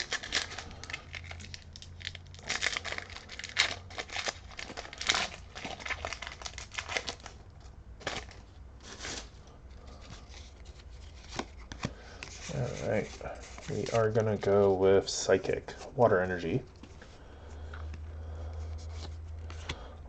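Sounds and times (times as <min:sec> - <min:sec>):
foil wrapper crinkling and tearing: 0:00.0 - 0:07.4, 0:08.0 - 0:14.7.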